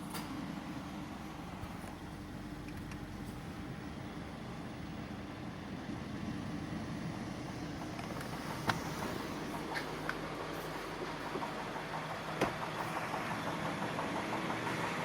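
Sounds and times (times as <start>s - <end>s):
car engine running with knock: 7.3s - 15.0s.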